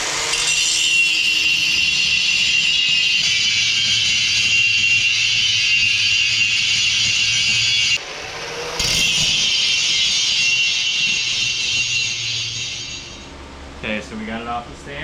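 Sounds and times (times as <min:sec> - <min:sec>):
grinder grinding metal: 0:00.0 - 0:13.3.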